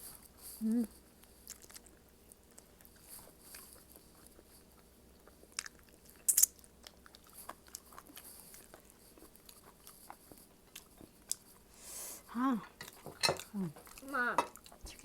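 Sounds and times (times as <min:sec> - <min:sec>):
person chewing: 0:00.1 - 0:11.8, 0:12.8 - 0:15.0
crunchy bite: 0:05.6 - 0:06.7.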